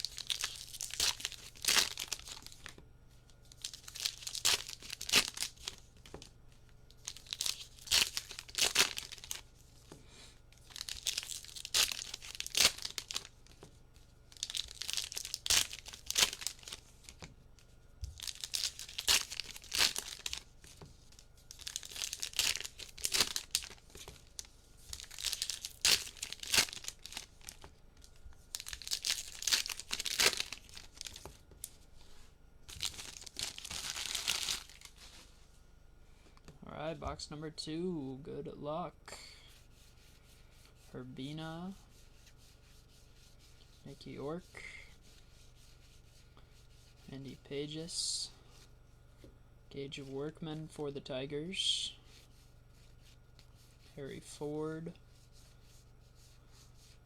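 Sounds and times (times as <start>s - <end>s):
card pack wrappers tearing and crinkling: 0.0s - 2.8s, 3.6s - 6.3s, 7.0s - 9.4s, 10.6s - 13.6s, 14.3s - 17.2s, 18.2s - 20.8s, 21.5s - 31.8s, 32.7s - 35.2s.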